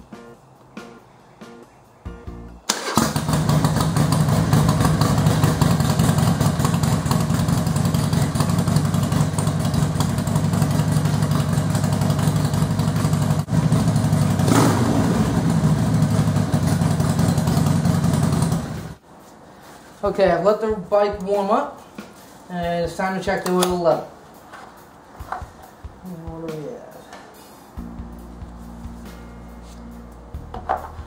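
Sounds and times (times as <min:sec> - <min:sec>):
motorcycle engine idling: 0:02.9 - 0:19.0.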